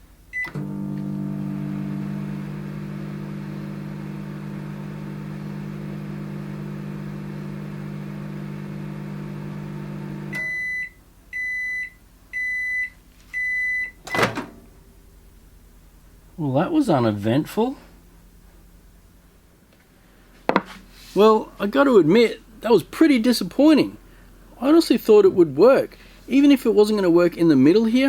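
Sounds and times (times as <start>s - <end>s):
microwave oven hum: 0.2s - 11.4s
microwave keypad beep: 10.3s - 14.2s.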